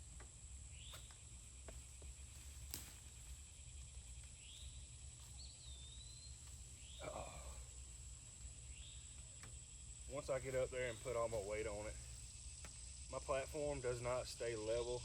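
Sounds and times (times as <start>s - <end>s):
high insect drone: 0.0s - 15.0s
rustle: 0.0s - 15.0s
bird chirping: 3.6s - 7.6s, 8.4s - 9.9s.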